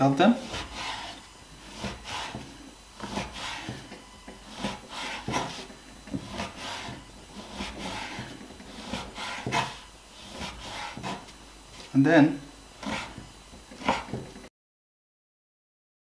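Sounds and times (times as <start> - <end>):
knife cutting flatbread: 0.4 - 11.9, 12.8 - 14.4.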